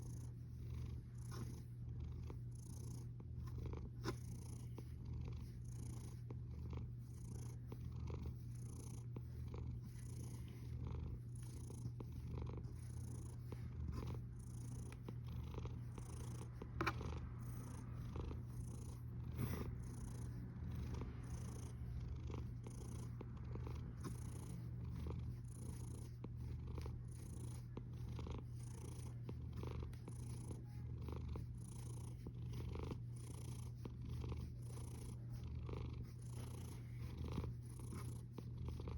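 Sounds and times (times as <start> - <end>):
cat snoring: 0.0 - 38.9.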